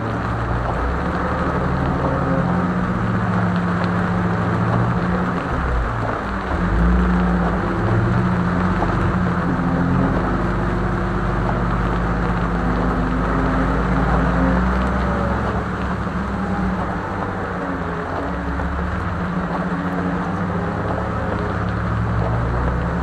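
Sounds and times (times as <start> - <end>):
constant rushing noise: 0.0 - 23.0
vehicle engine running: 0.0 - 23.0.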